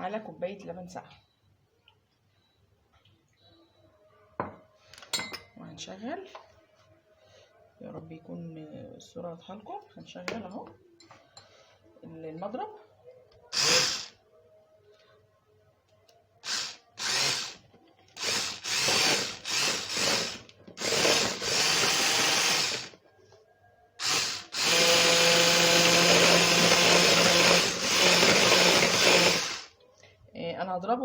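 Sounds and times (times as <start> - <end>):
electric mixer beating cream: 13.6 - 14.1, 16.5 - 17.6, 18.2 - 22.9, 24.0 - 29.7.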